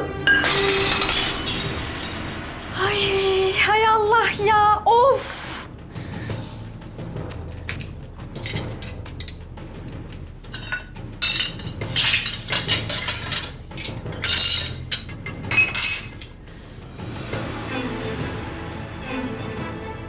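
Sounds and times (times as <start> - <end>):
dishes and glassware clinking: 0.3 - 2.6, 10.5 - 16.3.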